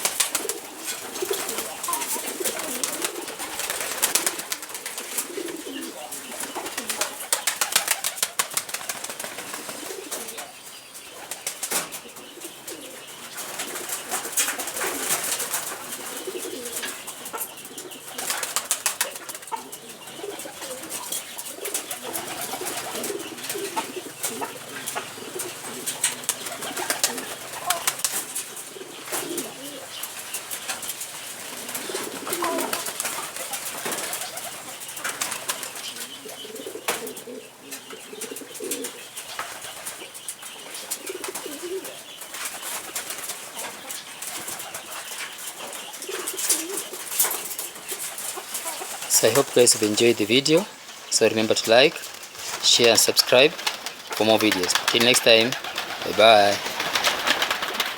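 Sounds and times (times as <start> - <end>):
poultry soft low calls: 0.0 - 7.4.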